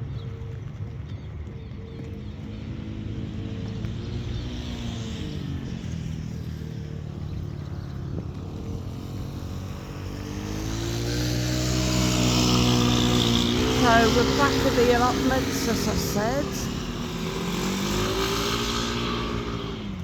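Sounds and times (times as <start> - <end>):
vehicle motor hum: 2.5 - 20.0.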